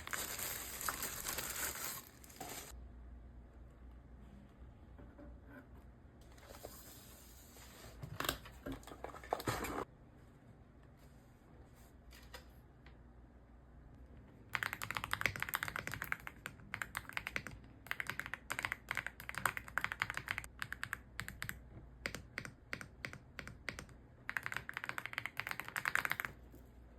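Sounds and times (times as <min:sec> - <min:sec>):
mechanical keyboard typing: 0:14.6 - 0:26.4.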